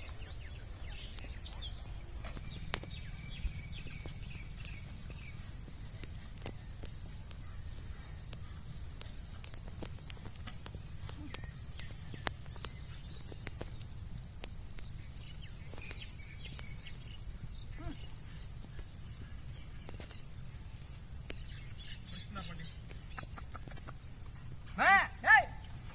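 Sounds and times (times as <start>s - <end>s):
pulsed insect chirp: 0.0s - 25.9s
sharp clicks: 8.3s - 15.0s.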